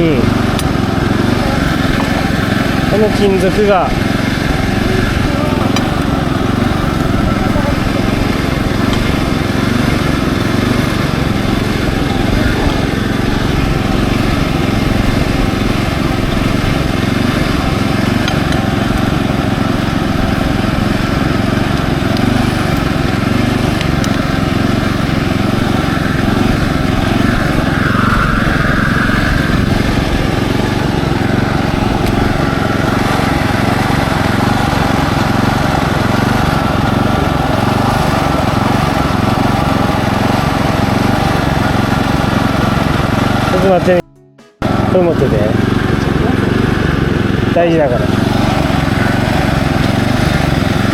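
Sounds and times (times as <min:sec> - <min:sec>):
small engine running: 0:00.0 - 0:44.0, 0:44.6 - 0:50.9.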